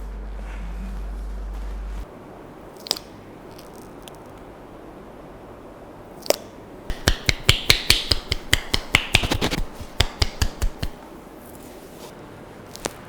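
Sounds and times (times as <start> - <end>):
cracking massage snaps: 2.7 - 4.5, 6.2 - 11.1, 12.7 - 13.0.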